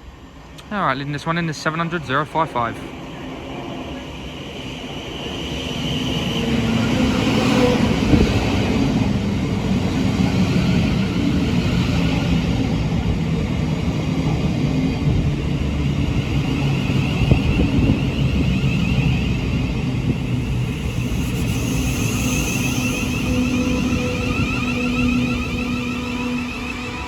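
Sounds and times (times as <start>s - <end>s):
electric train motors humming: 5.9s - 27.0s
wavering high tone: 20.4s - 27.0s.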